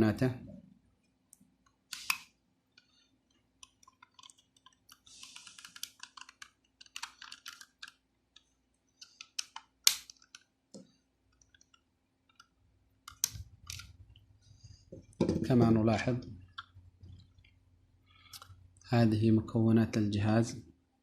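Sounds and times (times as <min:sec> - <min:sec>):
sharp plastic snap: 0:09.3 - 0:10.3.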